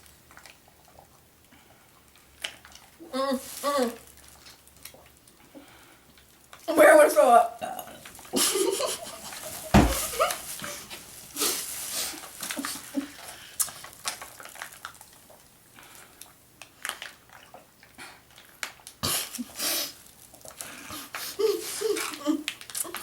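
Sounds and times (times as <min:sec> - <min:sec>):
sharp thump: 0:09.7 - 0:10.2.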